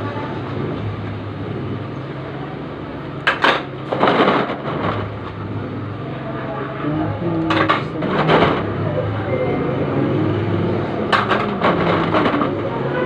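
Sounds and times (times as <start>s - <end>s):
kitchenware clatter: 3.2s - 5.2s, 7.4s - 8.7s, 11.1s - 12.7s.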